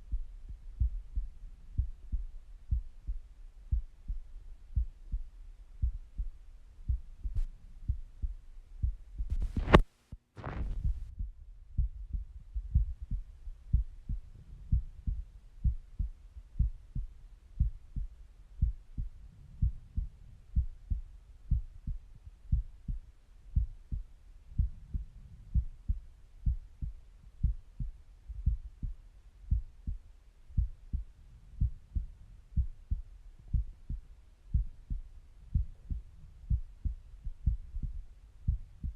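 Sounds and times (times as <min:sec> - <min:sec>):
heartbeat through stethoscope: 0:00.0 - 0:38.9.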